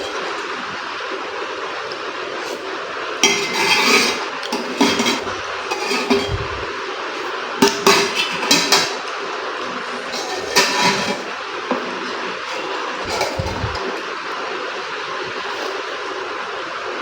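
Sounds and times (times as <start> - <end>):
steady hiss: 0.0 - 16.9
cutlery clinking against a dish: 3.2 - 6.4, 7.6 - 9.1, 10.1 - 14.0.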